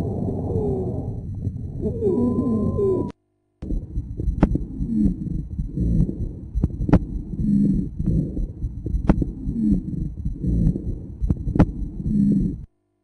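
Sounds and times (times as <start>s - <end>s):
heartbeat through stethoscope: 3.6s - 12.7s
sharp clicks: 8.0s - 9.4s.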